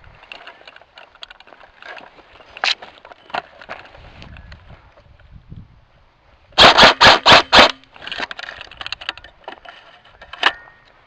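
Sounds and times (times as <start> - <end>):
rustling and crackling: 0.0 - 5.3, 7.8 - 11.0
airsoft gun shots: 6.6 - 7.8.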